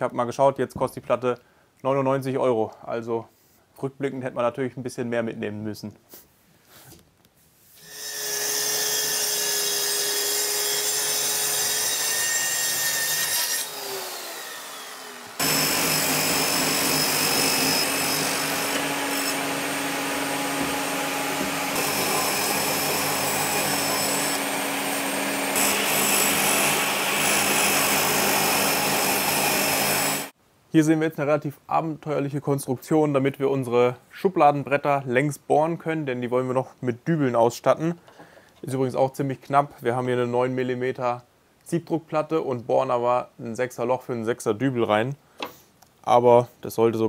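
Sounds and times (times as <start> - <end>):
circular saw cutting plywood: 7.8 - 30.3.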